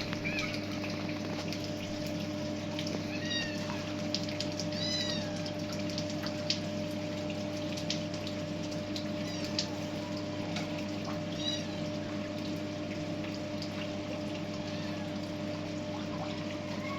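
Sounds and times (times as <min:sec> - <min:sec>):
kitten mewing: 0:00.0 - 0:00.7
steady low hum: 0:00.0 - 0:16.9.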